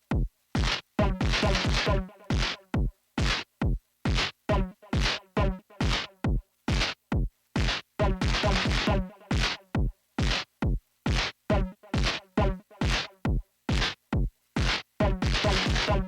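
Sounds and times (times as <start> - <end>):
synthesizer percussive pattern: 1.0 - 2.3, 8.0 - 9.3, 15.0 - 16.0.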